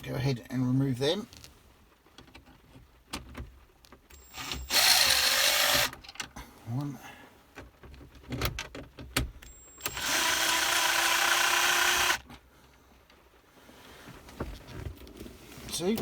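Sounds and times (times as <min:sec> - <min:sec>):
electric screwdriver motor running: 0:04.2 - 0:05.9, 0:09.8 - 0:12.2.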